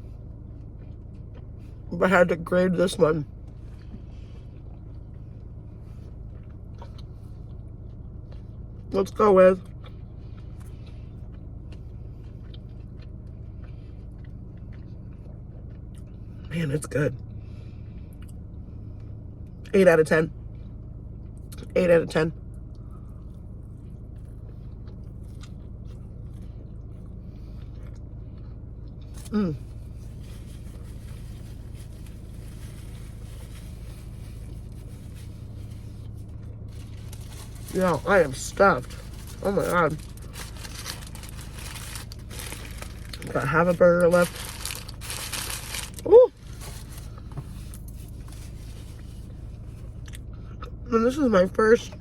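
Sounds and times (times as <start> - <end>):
steady low hum: 0.0 - 52.0
person chewing food: 3.5 - 8.8, 9.6 - 16.4, 22.7 - 30.2.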